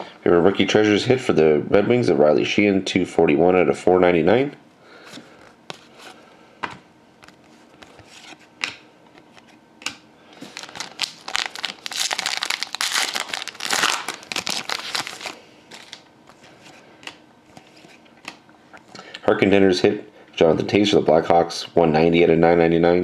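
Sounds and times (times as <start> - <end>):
wrapper crinkling and tearing: 10.4 - 16.1.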